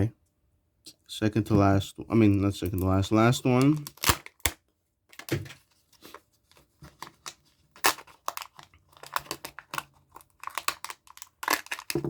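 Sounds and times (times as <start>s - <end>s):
foil wrapper crinkling: 2.7s - 4.6s, 6.0s - 12.0s.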